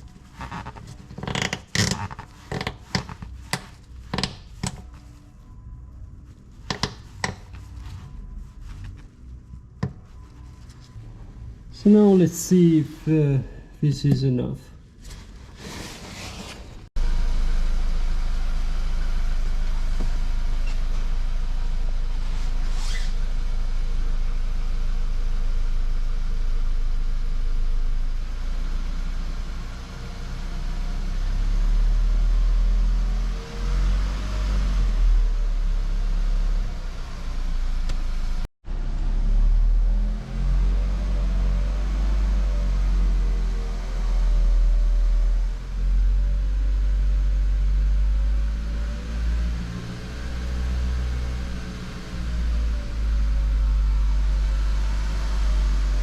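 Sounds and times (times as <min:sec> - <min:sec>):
car engine running: 0:17.0 - 0:33.4.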